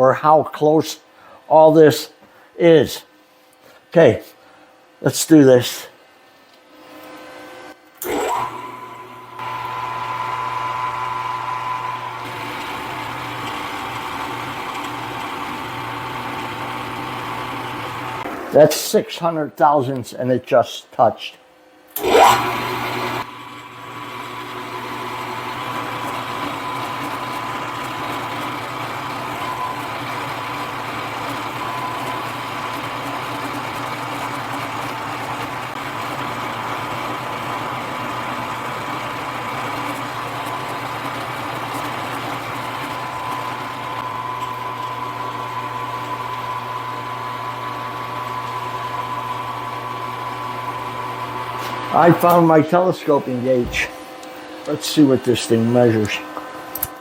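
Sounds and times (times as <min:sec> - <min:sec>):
milling machine motor whining: 0:08.0 - 0:18.5, 0:22.0 - 0:56.9.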